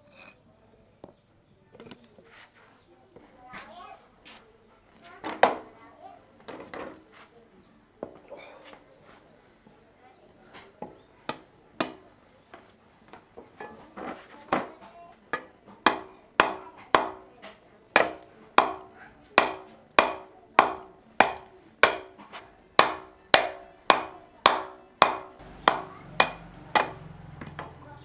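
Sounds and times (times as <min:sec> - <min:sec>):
tool chopping wood: 0:11.3 - 0:12.0, 0:15.9 - 0:17.4, 0:18.0 - 0:27.8.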